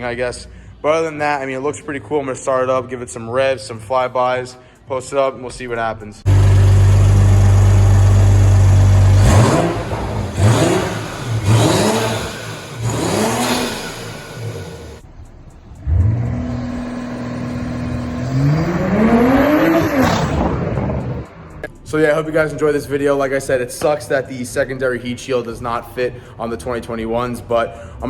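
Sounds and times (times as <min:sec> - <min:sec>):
car engine idling and revving: 0:06.3 - 0:21.8.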